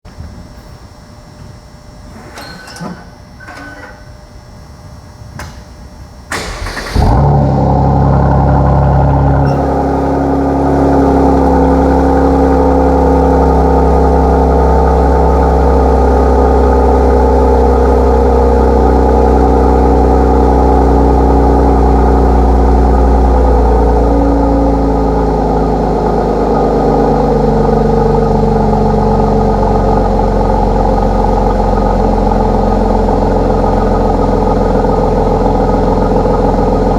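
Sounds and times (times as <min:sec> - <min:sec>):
engine cranking: 0:06.3 - 0:07.4
car engine fast idle: 0:06.3 - 0:36.9.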